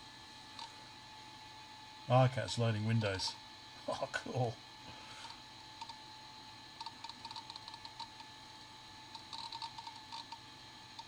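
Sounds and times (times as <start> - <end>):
computer steady hum: 0.0 - 11.0
hard drive seeking clicks: 0.5 - 0.8, 5.2 - 6.1, 6.7 - 11.0
faint ringing tone: 4.0 - 11.0.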